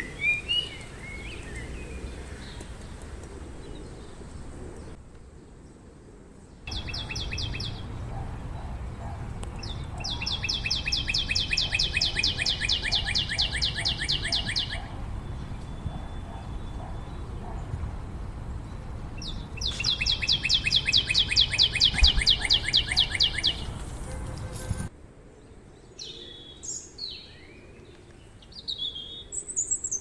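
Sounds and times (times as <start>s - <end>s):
low city rumble: 0.0s - 29.6s
small bird trilling: 19.6s - 23.7s.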